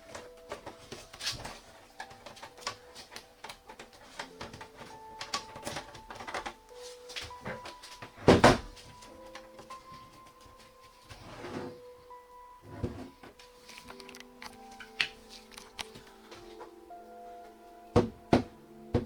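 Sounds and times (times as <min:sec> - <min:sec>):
soft background music: 0:00.0 - 0:19.0.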